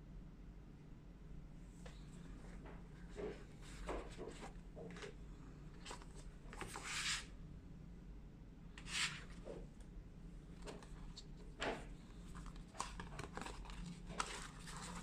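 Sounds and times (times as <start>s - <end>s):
packaging clicks and rustles: 10.6s - 15.0s.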